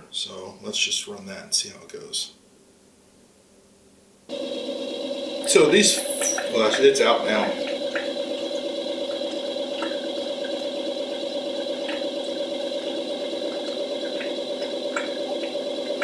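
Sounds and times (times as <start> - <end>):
printer motor whining: 4.3 - 16.0.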